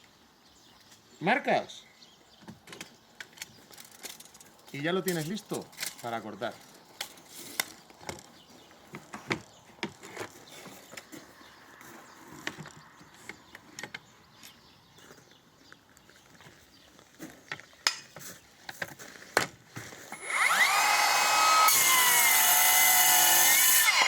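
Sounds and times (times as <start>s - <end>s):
saw and wood knocking: 20.2s - 24.0s.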